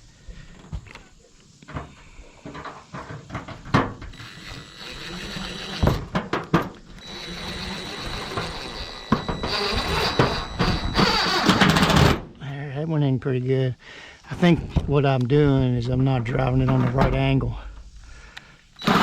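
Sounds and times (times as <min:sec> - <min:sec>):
power drill whining: 0:04.1 - 0:06.2, 0:06.9 - 0:12.2, 0:18.8 - 0:19.0.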